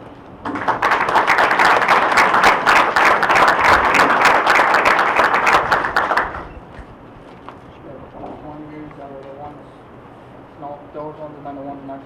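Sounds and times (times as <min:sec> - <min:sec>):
audience applauding: 0:00.4 - 0:06.5.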